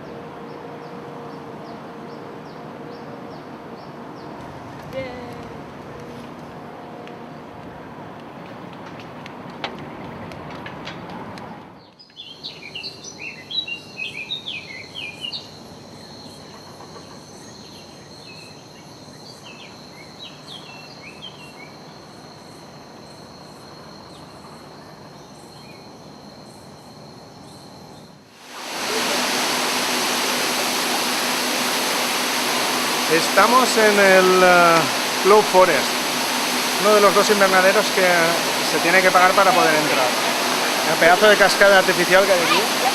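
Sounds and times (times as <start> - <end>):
birds chirping: 27.5 - 42.9
indoor waterfall rushing: 28.4 - 42.9.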